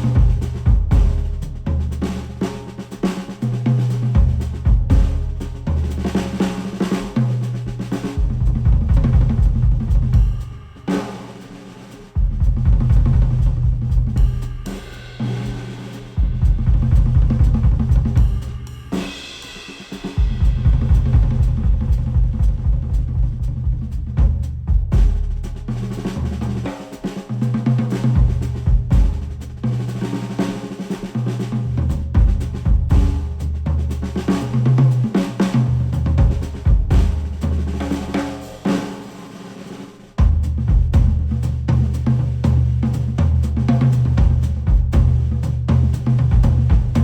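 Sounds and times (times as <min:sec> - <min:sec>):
drum kit: 0:00.0 - 0:47.0
bass line: 0:08.2 - 0:10.4, 0:12.2 - 0:14.7, 0:16.2 - 0:18.4, 0:20.4 - 0:25.6, 0:40.3 - 0:47.0.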